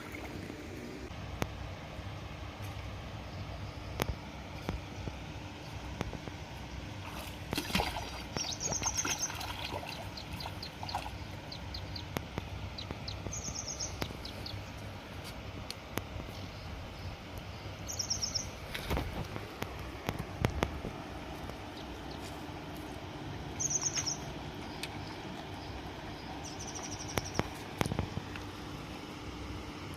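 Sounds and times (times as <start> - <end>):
steady low rumble: 0.0 - 29.9
bird trilling: 8.3 - 12.1, 12.7 - 14.8, 17.9 - 18.6, 23.6 - 24.3.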